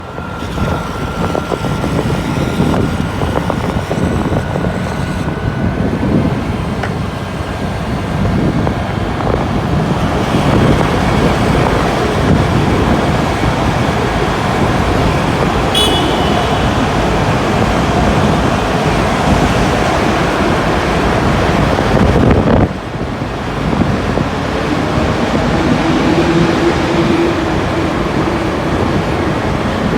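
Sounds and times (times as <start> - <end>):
scooter road and traffic rumble: 0.0 - 29.9
high-pitched horn beep: 15.7 - 18.3.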